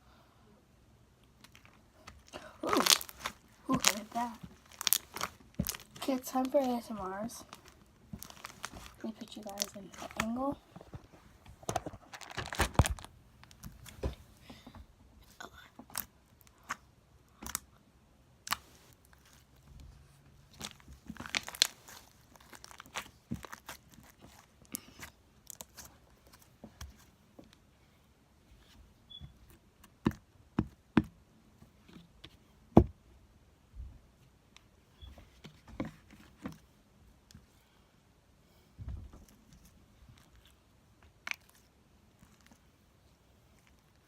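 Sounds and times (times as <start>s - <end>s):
slime squishing with sticky pops: 1.2s - 10.6s, 15.5s - 17.8s, 20.5s - 27.6s, 39.2s - 42.6s.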